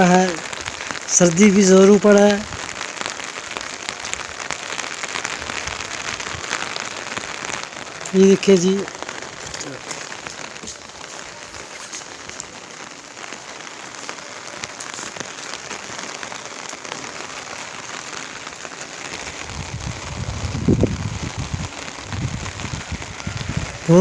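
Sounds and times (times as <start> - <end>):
heavy rain falling: 0.0 - 24.0
wind rumbling on microphone: 19.1 - 24.0.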